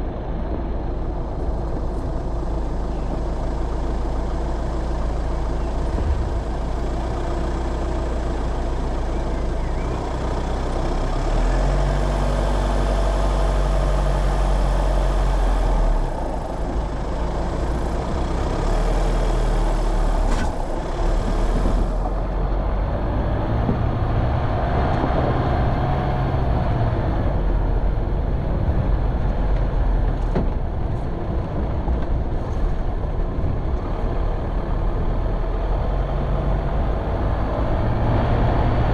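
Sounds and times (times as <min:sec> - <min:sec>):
off-road vehicle engine revving: 0:17.9 - 0:27.5, 0:34.0 - 0:38.9.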